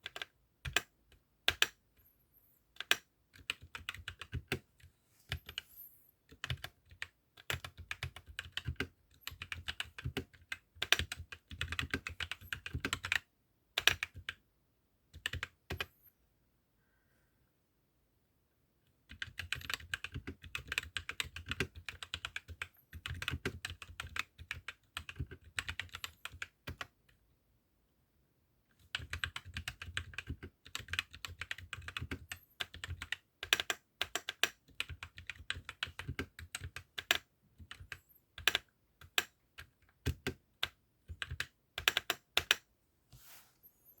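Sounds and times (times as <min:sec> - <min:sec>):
mechanical keyboard typing: 0:00.0 - 0:01.8, 0:02.8 - 0:04.6, 0:06.3 - 0:14.4, 0:15.2 - 0:16.0, 0:19.1 - 0:27.0, 0:28.8 - 0:42.6.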